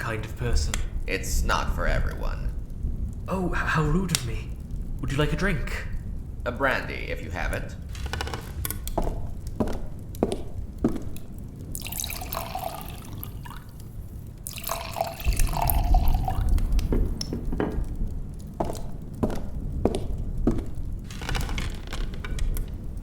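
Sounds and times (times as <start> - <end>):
liquid pouring into a glass: 11.7 - 13.8, 14.4 - 16.7
glass and bottle clinking: 11.8 - 13.6, 14.5 - 17.0.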